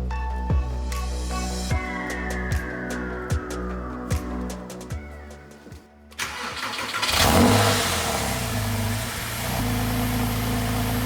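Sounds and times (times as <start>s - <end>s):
car engine starting and idling: 6.2s - 11.0s.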